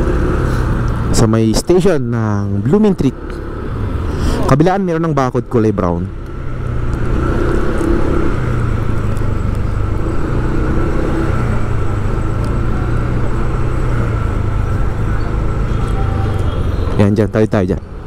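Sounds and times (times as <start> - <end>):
road and traffic noise: 0.0 - 18.0
vehicle engine running: 0.0 - 18.0.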